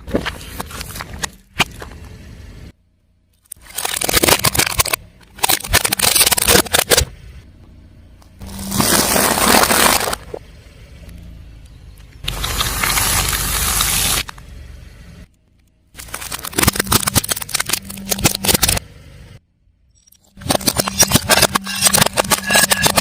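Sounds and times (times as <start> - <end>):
objects crushed under car tyre: 3.5 - 7.1, 8.4 - 10.4, 15.9 - 18.8, 20.4 - 23.0.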